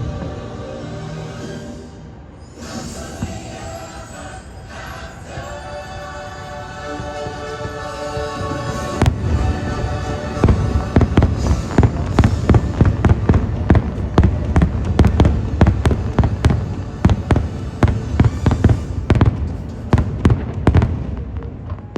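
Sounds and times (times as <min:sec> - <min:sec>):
held music chord: 0:00.0 - 0:20.3
fireworks bursting: 0:02.4 - 0:05.5, 0:07.0 - 0:21.9
low rumble: 0:08.7 - 0:21.9.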